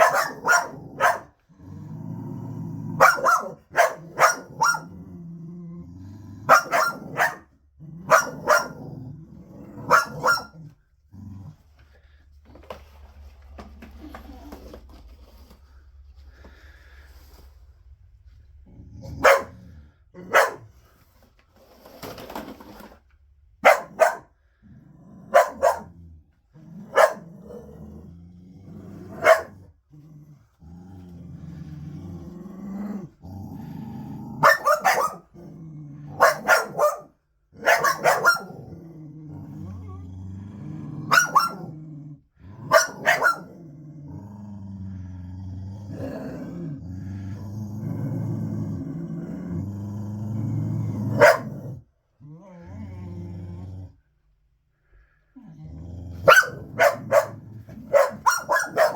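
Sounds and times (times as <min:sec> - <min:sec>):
dog barking: 0:00.0 - 0:01.4, 0:03.0 - 0:04.9, 0:06.5 - 0:07.5, 0:08.1 - 0:08.8, 0:09.8 - 0:10.6, 0:19.2 - 0:20.7, 0:23.6 - 0:24.3, 0:25.3 - 0:26.0, 0:26.9 - 0:27.3, 0:29.1 - 0:29.7, 0:34.4 - 0:35.3, 0:36.2 - 0:38.6, 0:41.1 - 0:41.7, 0:42.6 - 0:43.6, 0:51.2 - 0:51.7, 0:56.2 - 0:58.9
dog growling: 0:00.0 - 0:12.1, 0:23.8 - 0:36.9, 0:37.6 - 0:54.1, 0:55.0 - 0:58.9.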